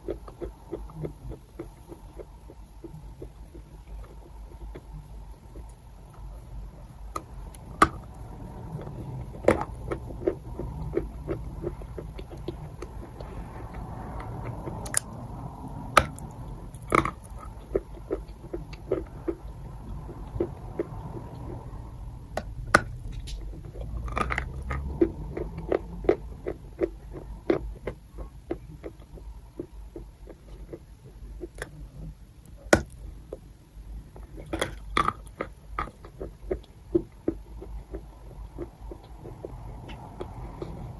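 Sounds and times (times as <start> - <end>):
chalk crunching when chewed: 6.9 - 21.8.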